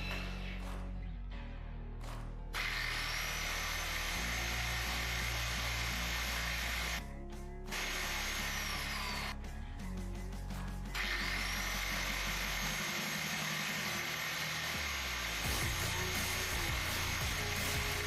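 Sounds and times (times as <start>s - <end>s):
background music: 0.0s - 18.0s
angle grinder cutting steel: 2.6s - 7.0s, 7.7s - 9.4s, 11.0s - 18.0s.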